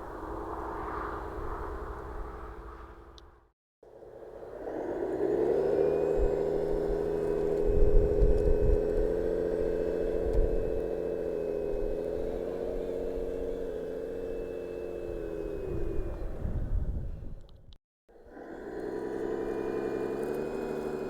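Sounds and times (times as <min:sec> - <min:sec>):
electric motor humming: 0:04.3 - 0:16.6, 0:18.2 - 0:21.0.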